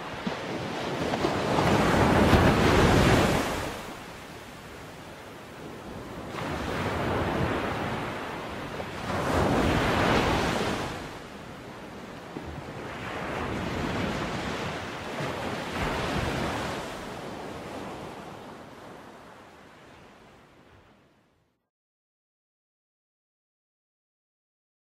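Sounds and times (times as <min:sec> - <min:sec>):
ocean waves breaking: 0:00.0 - 0:21.1.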